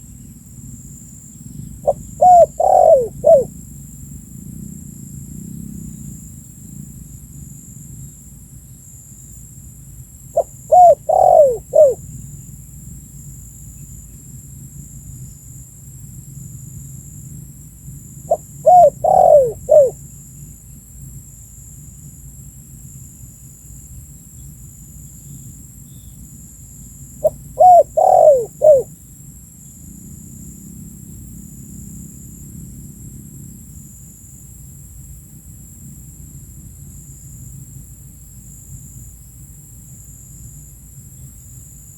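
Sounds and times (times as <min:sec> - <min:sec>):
low background noise: 0:00.0 - 0:41.9
dove cooing: 0:01.8 - 0:03.5, 0:10.4 - 0:12.0, 0:18.3 - 0:20.0, 0:27.2 - 0:28.9.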